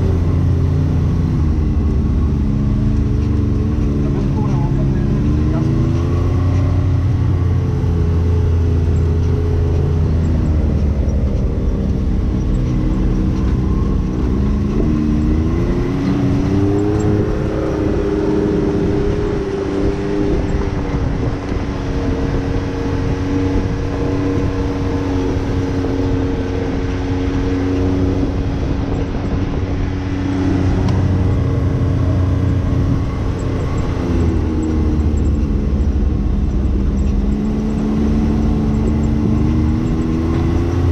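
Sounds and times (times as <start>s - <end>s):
engine running: 0.0s - 40.9s.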